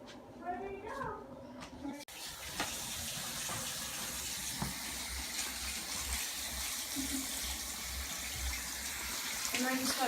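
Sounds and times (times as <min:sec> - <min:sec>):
water splashing into sink: 0:02.1 - 0:10.0.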